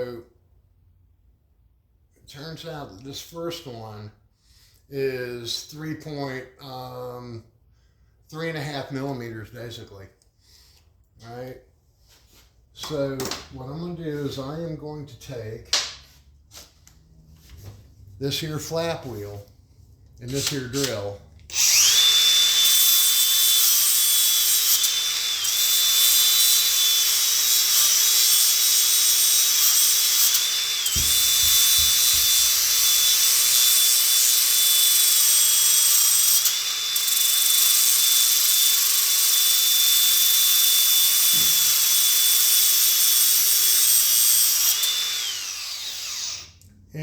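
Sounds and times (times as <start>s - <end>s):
electric drill motor whine: 21.5s - 46.6s.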